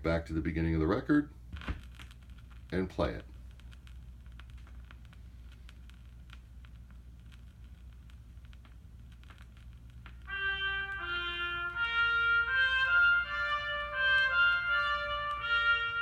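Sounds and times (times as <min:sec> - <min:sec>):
stylus clicks and crackle: 0:01.5 - 0:11.1
brass-led tune: 0:10.2 - 0:16.0.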